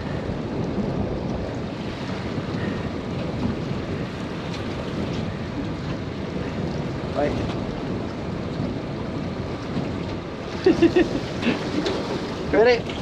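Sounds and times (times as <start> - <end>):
water lapping against boat hull: 0.0 - 13.0
wind buffeting microphone: 0.0 - 13.0.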